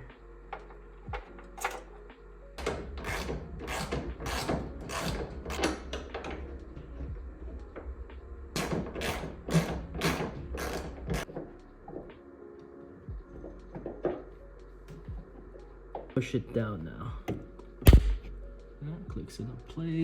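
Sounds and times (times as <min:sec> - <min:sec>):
steady low hum: 0:00.0 - 0:12.1
ratchet wrench strokes: 0:02.6 - 0:06.1, 0:08.6 - 0:11.2.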